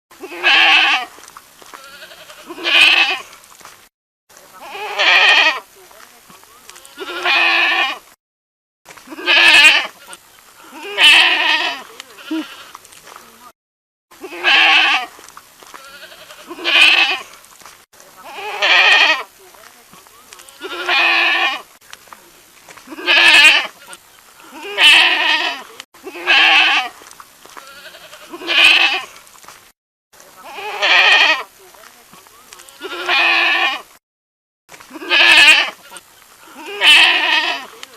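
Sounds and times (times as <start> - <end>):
goat bleating: 0.2 - 3.3, 4.6 - 5.7, 6.7 - 8.1, 9.1 - 13.5, 14.2 - 17.3, 18.2 - 19.4, 20.3 - 21.7, 22.9 - 27.0, 27.6 - 29.2, 30.4 - 31.6, 32.5 - 34.0, 34.9 - 37.9.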